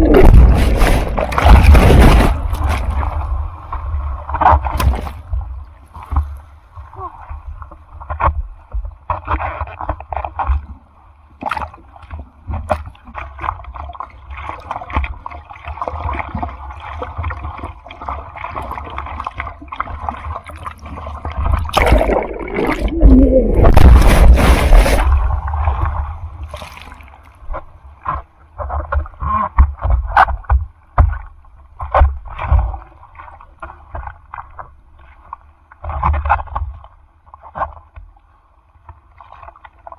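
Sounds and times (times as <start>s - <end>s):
sea water sloshing and splashing: 0.0s - 39.9s
wind rumble on microphone: 21.4s - 26.5s
breaking wave rushing in: 21.8s - 25.9s.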